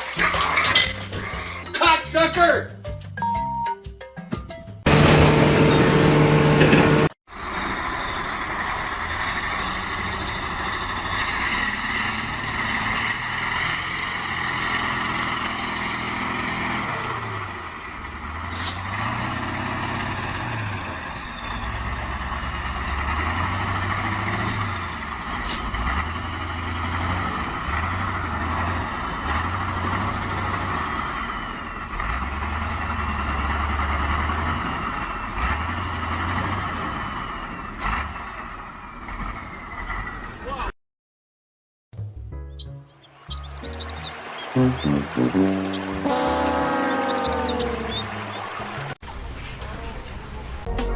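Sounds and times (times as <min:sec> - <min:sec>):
heavy vehicle engine revving: 0:04.9 - 0:40.4, 0:43.2 - 0:50.7
loud steady tone: 0:44.6 - 0:48.1.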